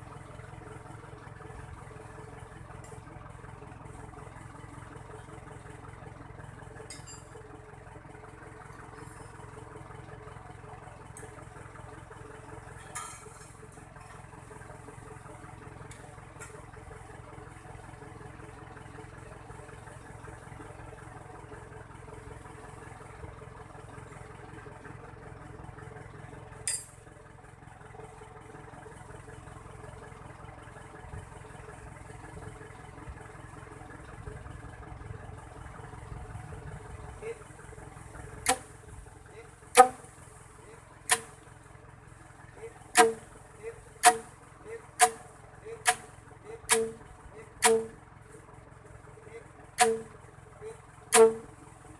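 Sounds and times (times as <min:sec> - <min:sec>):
vehicle engine idling: 0:00.0 - 0:51.9
short metallic clinks: 0:06.9 - 0:07.4, 0:12.8 - 0:13.5, 0:26.7 - 0:27.0.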